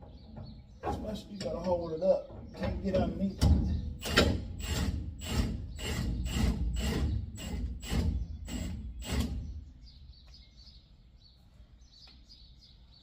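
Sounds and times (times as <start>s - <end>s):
birds chirping faintly: 0.0s - 4.5s, 5.2s - 13.0s
impact wrench hammering: 3.4s - 7.0s.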